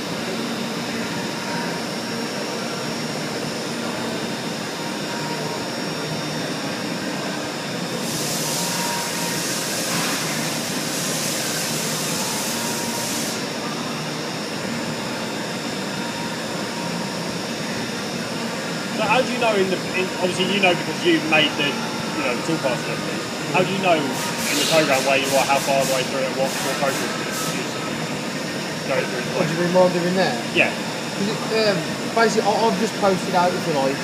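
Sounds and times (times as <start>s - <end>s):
cnc machine spindle noise: 0.0s - 34.0s
loud hiss: 24.0s - 27.7s.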